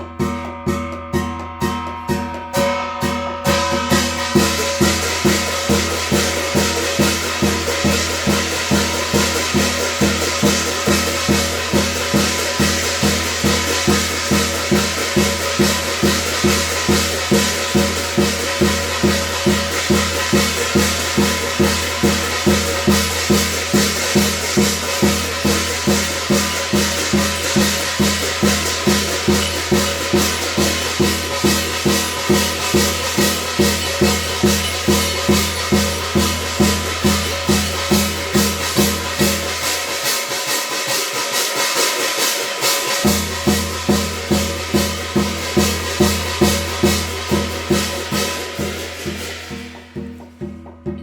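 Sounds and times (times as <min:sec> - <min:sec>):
drum beating: 0:00.0 - 0:51.0
held tones: 0:24.8 - 0:38.8.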